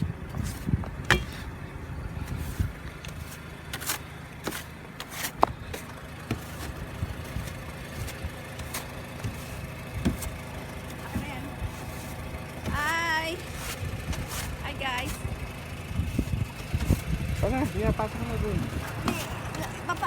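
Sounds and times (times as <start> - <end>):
car engine idling: 0.0 - 20.0.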